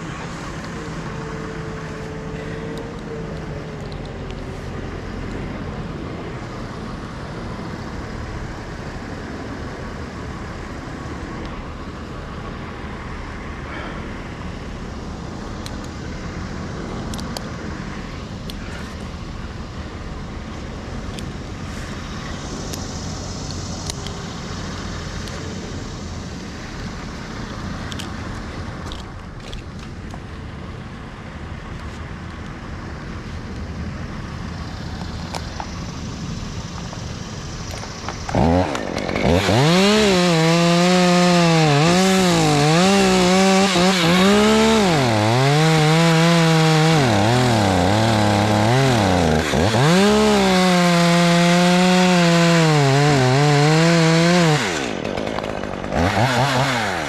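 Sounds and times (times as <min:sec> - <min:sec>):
engine rumble: 0:00.0 - 0:57.0.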